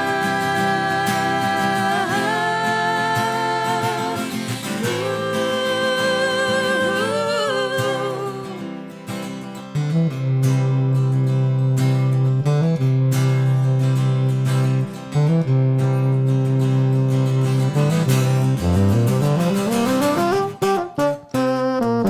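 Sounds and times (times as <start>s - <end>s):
acoustic guitar playing: 0.0s - 22.0s
held wavering melody notes: 15.2s - 22.0s.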